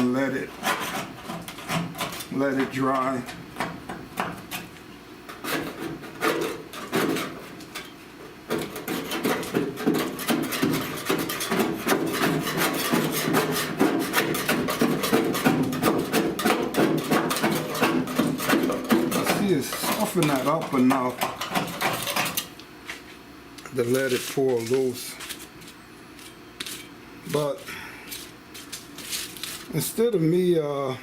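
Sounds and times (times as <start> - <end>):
scraping paint off steel panel: 8.5 - 22.4.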